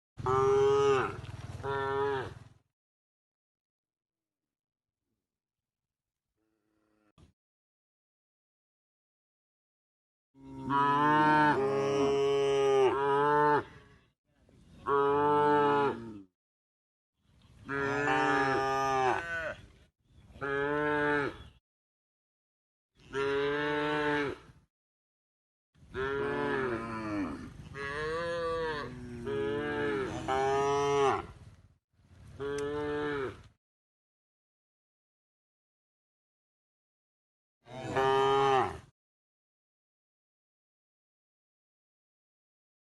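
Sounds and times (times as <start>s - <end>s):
cow mooing: 0.2s - 2.4s, 10.4s - 13.8s, 14.9s - 16.3s, 17.6s - 19.6s, 20.4s - 21.5s, 23.1s - 24.5s, 25.9s - 31.4s, 32.4s - 33.5s, 37.7s - 38.9s.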